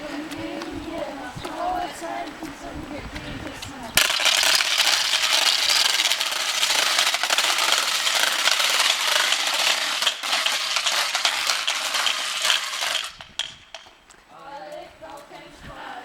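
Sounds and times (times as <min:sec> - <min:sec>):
wooden ratchets clattering: 0:04.0 - 0:14.0.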